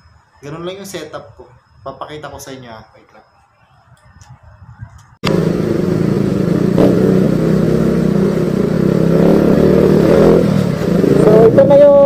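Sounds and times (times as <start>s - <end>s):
loud steady wind noise: 0.0s - 12.0s
motorcycle engine running: 5.2s - 12.0s.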